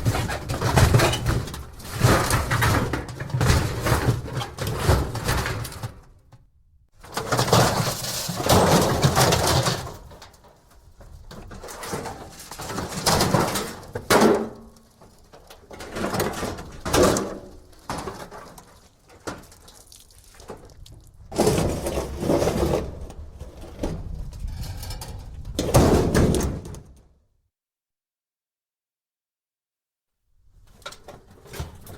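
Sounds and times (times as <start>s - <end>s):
thin metal scrap rattling and scraping: 7.0s - 10.6s.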